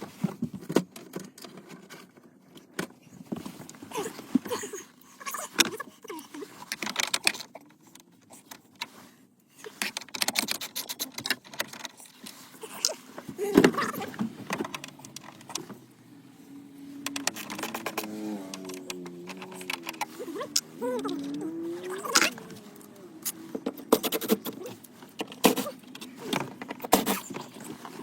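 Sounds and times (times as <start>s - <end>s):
metal keys rattling in car stereo: 13.7s - 27.9s.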